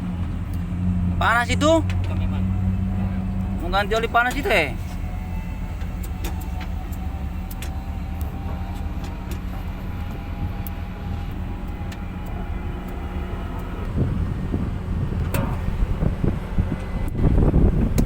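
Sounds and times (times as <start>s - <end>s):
diesel engine droning: 0.0s - 18.0s
faint clicks: 5.8s - 13.0s.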